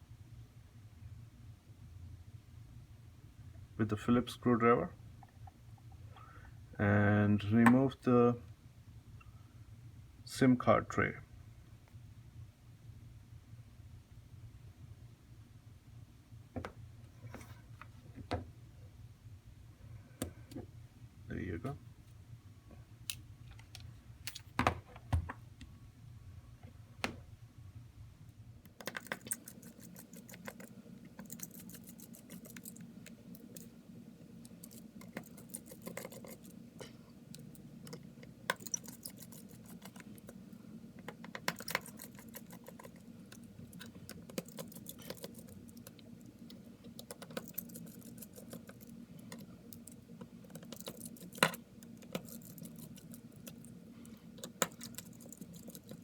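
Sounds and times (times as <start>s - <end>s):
low steady hum: 0.0s - 56.0s
screwdriver and screws clicking: 28.7s - 33.7s, 34.4s - 36.6s, 37.3s - 40.4s, 41.0s - 53.8s, 54.4s - 56.0s.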